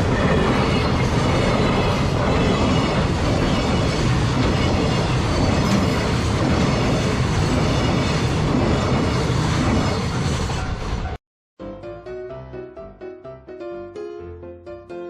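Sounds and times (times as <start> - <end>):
freight train rumbling past: 0.0 - 11.2.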